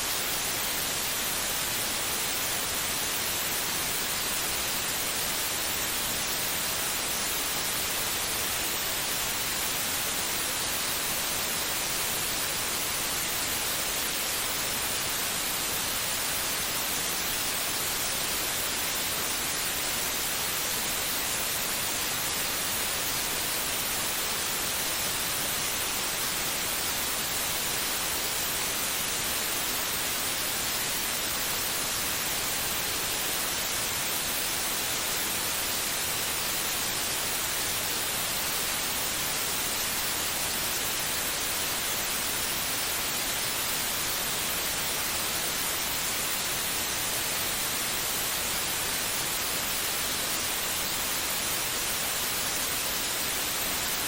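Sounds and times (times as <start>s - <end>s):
steady white noise hiss: 0.0s - 54.0s.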